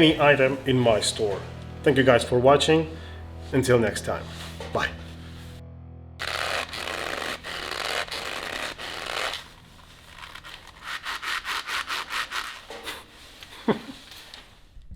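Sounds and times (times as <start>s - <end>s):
scratchy rubbing on a surface: 6.2s - 13.4s.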